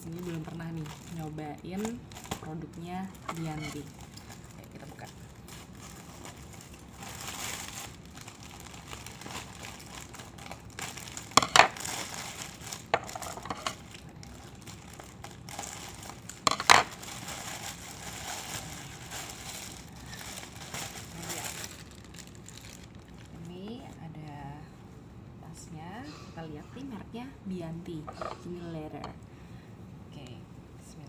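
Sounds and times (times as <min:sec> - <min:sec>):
wrapping rustling and crinkling: 0:00.0 - 0:24.5.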